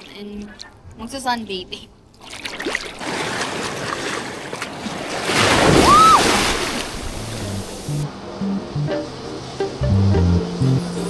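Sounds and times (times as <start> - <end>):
surf washing onto sandy beach: 3.0 - 8.1.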